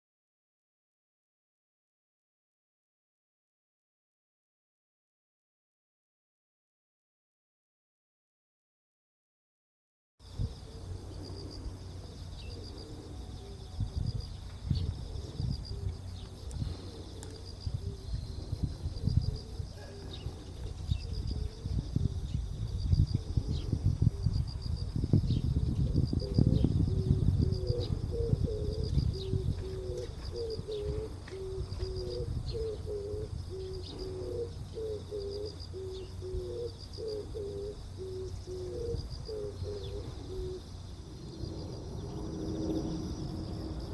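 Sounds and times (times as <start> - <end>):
crickets chirping: 10.2 - 43.9
dove cooing: 10.2 - 43.9.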